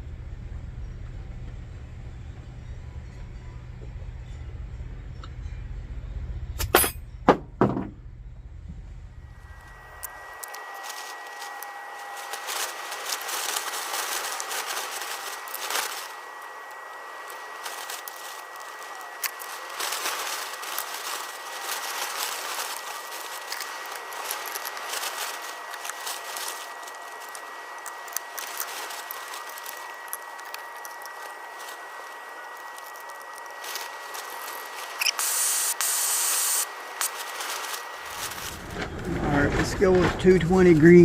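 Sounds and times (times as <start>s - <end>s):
lantern hissing: 9.3s - 38.7s.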